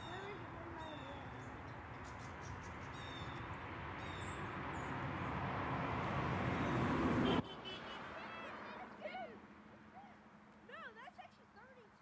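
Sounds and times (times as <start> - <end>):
bird chirps: 0.0 - 5.0
car engine and tyre noise: 0.0 - 10.7.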